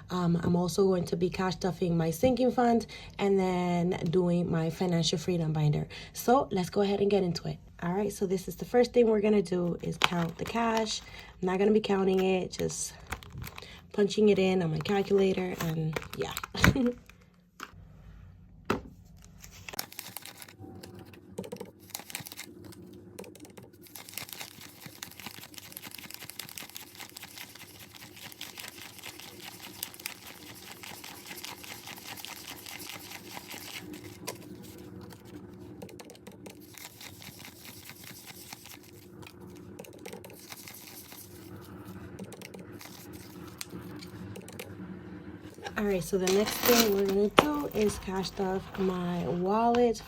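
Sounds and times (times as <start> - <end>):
banknotes rustling: 9.8 - 11.3, 12.1 - 13.9, 14.6 - 17.3, 19.2 - 44.2, 46.1 - 50.0
calculator keys clicking: 35.8 - 38.8, 39.8 - 41.1.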